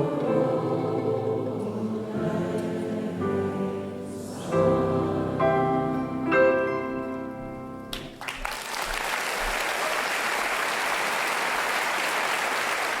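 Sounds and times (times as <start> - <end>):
audience applause: 8.0 - 13.0.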